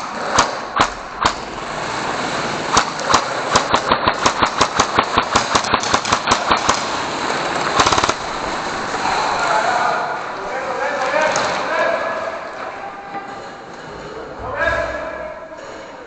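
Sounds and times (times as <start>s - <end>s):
airsoft guns firing: 0.0s - 9.4s
steady background noise: 0.0s - 16.0s.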